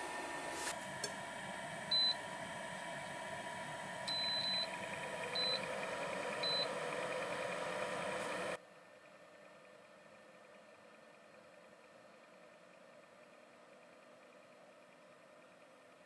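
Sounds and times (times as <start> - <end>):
steady hum: 0.0 - 8.6.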